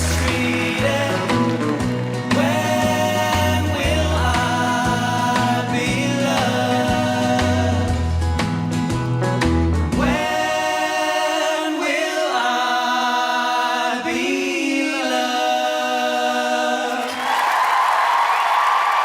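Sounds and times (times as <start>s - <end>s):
audience applause and cheering: 0.0s - 5.2s, 16.9s - 19.0s
men singing in close harmony: 0.0s - 8.1s, 10.0s - 17.2s
backing band: 0.0s - 11.5s.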